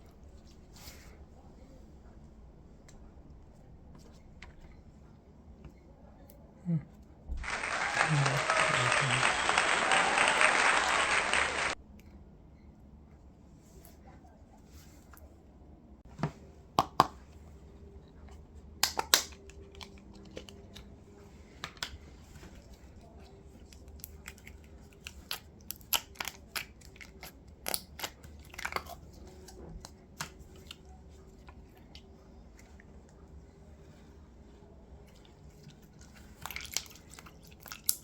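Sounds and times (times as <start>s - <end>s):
wet pops and crackles: 18.8s - 19.5s.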